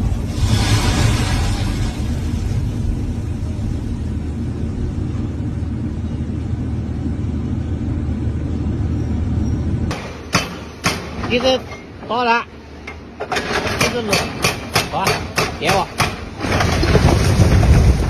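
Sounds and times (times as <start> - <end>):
brief hissing rush: 0.0 - 2.8
diesel engine rumbling: 0.0 - 18.0.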